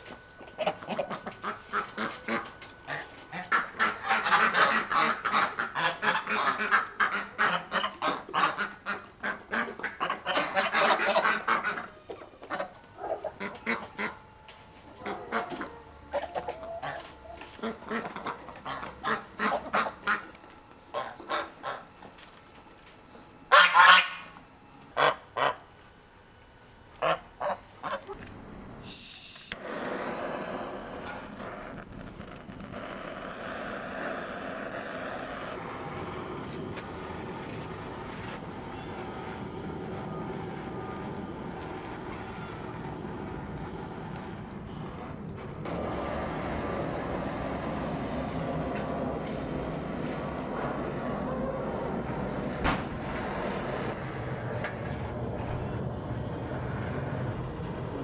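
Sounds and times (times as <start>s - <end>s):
geese honking: 0.0s - 22.2s, 23.4s - 25.7s, 26.9s - 28.2s.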